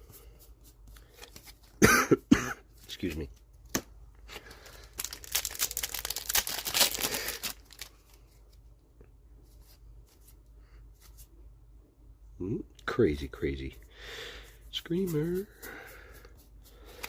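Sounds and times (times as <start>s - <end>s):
plastic wrapper crinkling and tearing: 4.5s - 8.6s.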